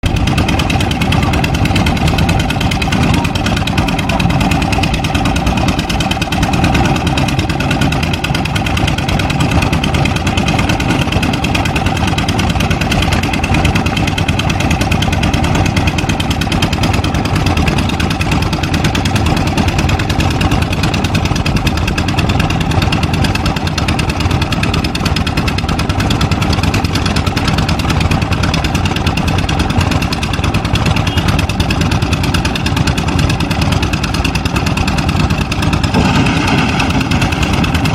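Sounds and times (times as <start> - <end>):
excavator diesel engine running: 0.0 - 37.9.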